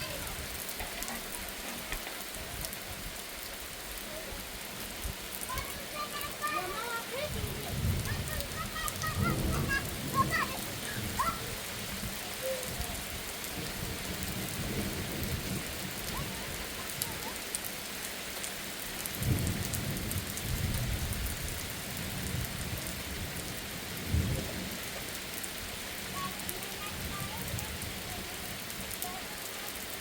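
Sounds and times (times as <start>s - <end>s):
heavy rain falling: 0.0s - 30.0s
thunder rumbling: 6.2s - 17.2s, 19.1s - 25.1s.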